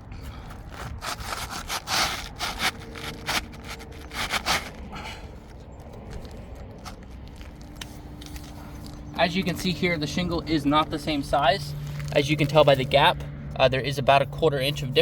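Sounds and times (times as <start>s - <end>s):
shingle scraping against shingles: 0.2s - 9.4s.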